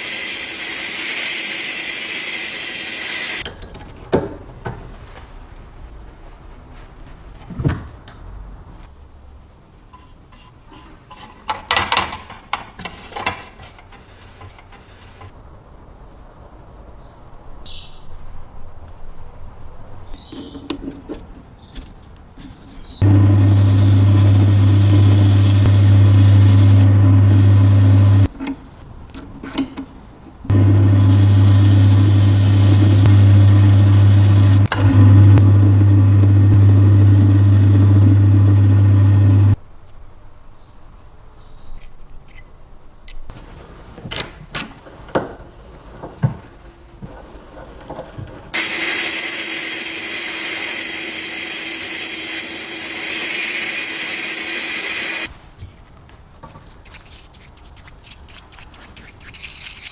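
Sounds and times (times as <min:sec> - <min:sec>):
power tool motor running: 0:00.0 - 0:03.4, 0:23.0 - 0:28.3, 0:30.5 - 0:39.6, 0:48.6 - 0:55.3.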